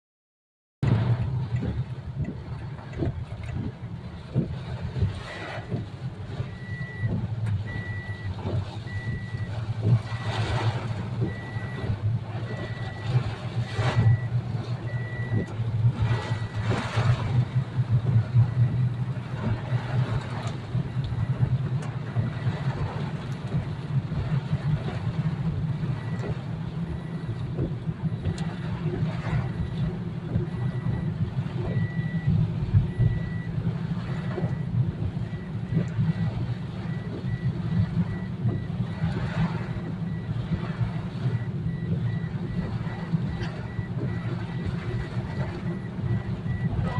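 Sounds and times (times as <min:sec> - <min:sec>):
short electronic beeps: 0:06.4 - 0:10.5, 0:11.2 - 0:15.6, 0:29.2 - 0:32.3, 0:32.9 - 0:39.0, 0:41.1 - 0:46.9.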